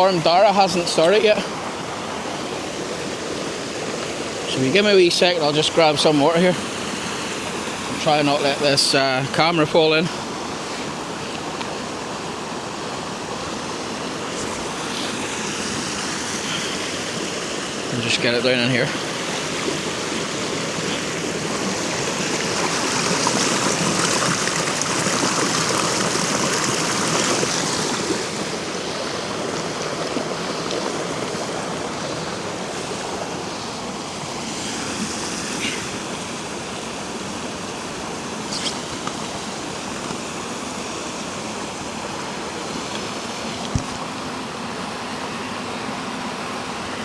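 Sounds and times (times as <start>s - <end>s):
container filling in water flow: 0.0s - 47.0s
mountain stream babbling: 0.0s - 47.0s.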